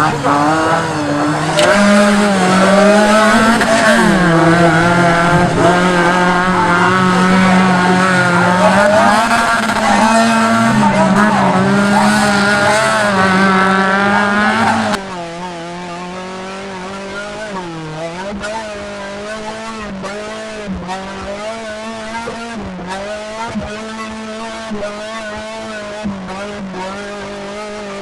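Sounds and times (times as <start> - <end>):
engine at high revs: 0.0 - 28.0.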